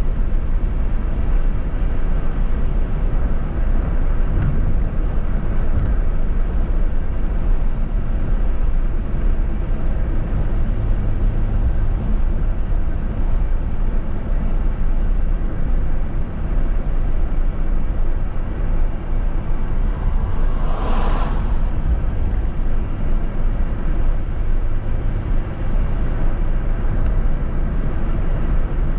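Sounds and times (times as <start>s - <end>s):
vehicle road and wind noise: 0.0s - 28.9s
whoosh: 19.3s - 23.2s.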